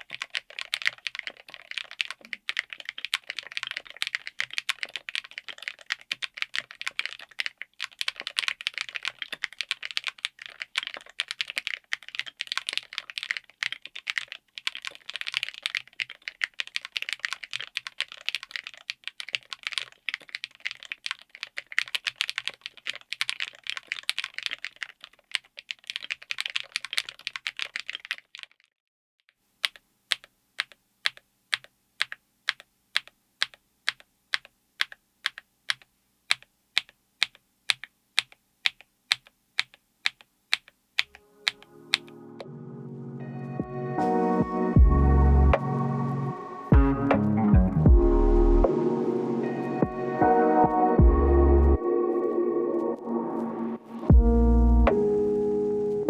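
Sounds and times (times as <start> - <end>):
mechanical keyboard typing: 0.0 - 28.6, 29.6 - 42.2.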